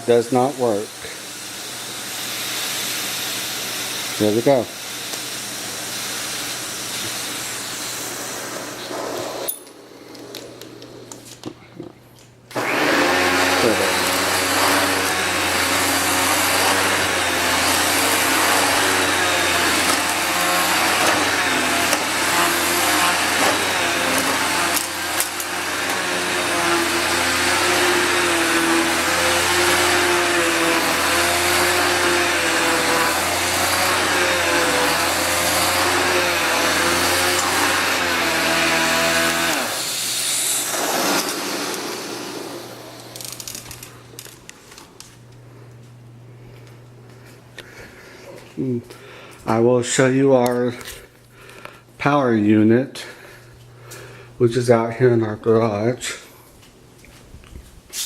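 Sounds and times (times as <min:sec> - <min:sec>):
vacuum motor humming: 0:00.0 - 0:49.6
vacuum suction rushing: 0:04.8 - 0:28.4, 0:29.0 - 0:44.5.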